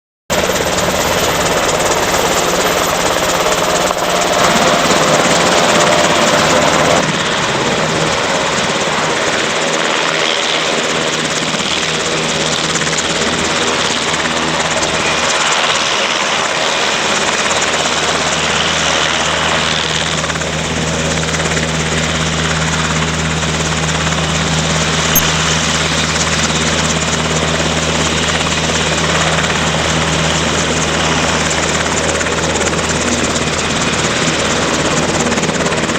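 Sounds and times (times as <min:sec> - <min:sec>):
helicopter rotor and engine: 0:00.3 - 0:35.9.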